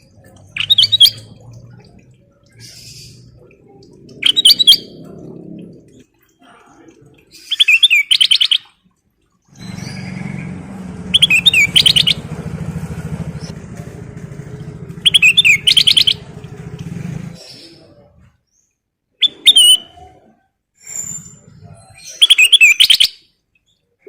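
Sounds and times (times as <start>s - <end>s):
bird singing whistled notes: 0.5s - 1.3s, 7.5s - 8.6s, 11.1s - 12.3s, 15.0s - 16.2s, 19.2s - 20.0s, 22.2s - 23.2s
engine idling: 9.5s - 18.3s.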